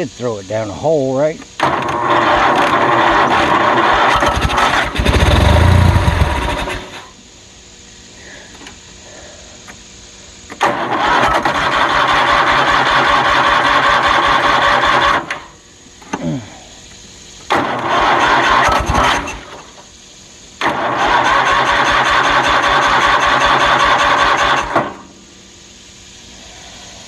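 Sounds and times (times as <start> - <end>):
electric starter cranking engine: 1.5 - 7.2, 10.4 - 16.1, 17.4 - 25.1.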